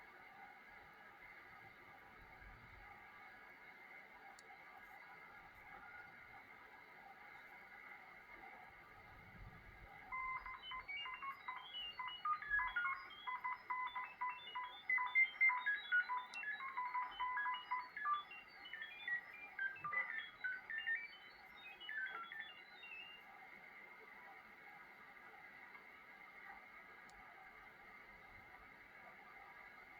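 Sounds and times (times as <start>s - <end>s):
rapid beeping radio tones: 9.3s - 23.5s.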